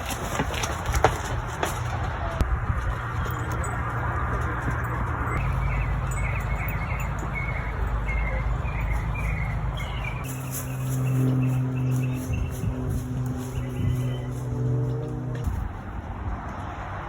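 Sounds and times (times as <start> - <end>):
small birds chirping: 5.3 - 14.6.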